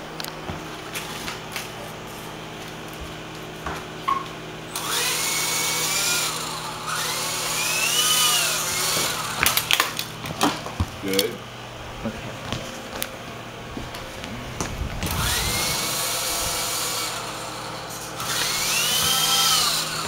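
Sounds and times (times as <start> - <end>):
toy helicopter motor and rotor: 4.7 - 10.1, 15.0 - 20.0.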